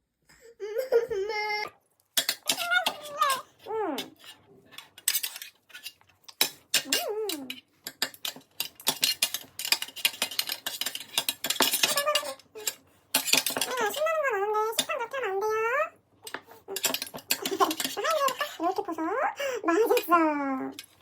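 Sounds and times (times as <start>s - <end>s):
cutlery and dishes clinking: 2.2s - 14.0s, 16.3s - 18.6s, 20.7s - 21.0s
young child vocal sounds: 2.5s - 4.2s.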